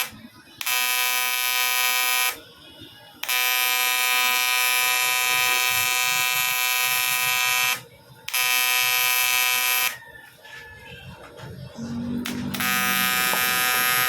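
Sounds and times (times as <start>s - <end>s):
welding arc buzzing: 0.0s - 2.4s, 3.2s - 10.0s, 12.2s - 14.0s.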